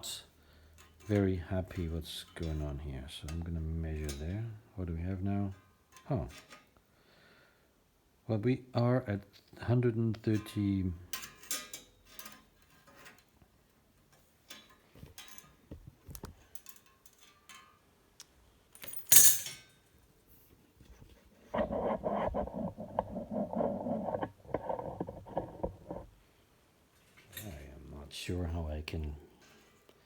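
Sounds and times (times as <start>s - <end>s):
rough continuous noise: 0.0s - 30.0s
sharp metal clank: 18.8s - 19.7s.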